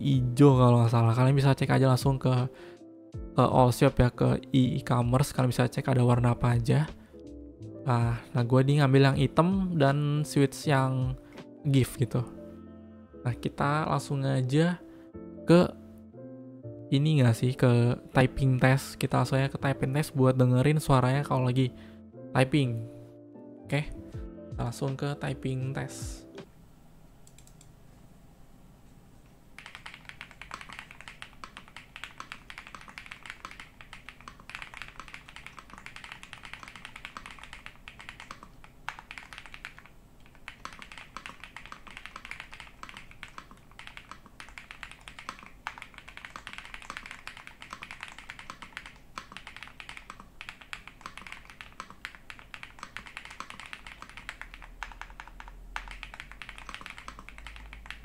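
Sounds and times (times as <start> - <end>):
fast typing on mechanical keyboard: 29.6 - 58.0.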